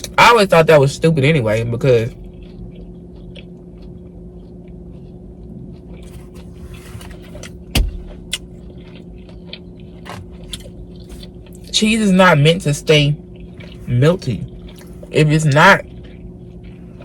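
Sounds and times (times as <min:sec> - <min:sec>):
car idling hum: 0:05.2 - 0:17.0.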